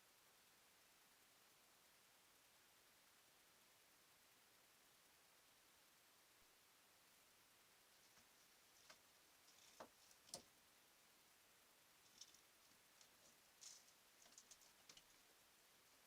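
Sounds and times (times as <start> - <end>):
light scratching: 7.9 - 10.5, 12.0 - 15.4.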